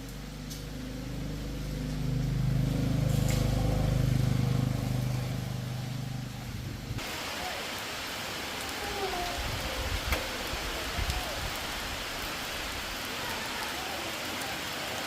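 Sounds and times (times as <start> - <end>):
motorcycle engine running: 0.0 - 7.0.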